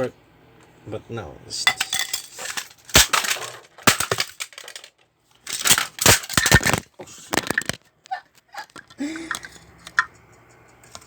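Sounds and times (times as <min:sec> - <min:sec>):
plastic toy parts clattering: 0:01.7 - 0:07.9.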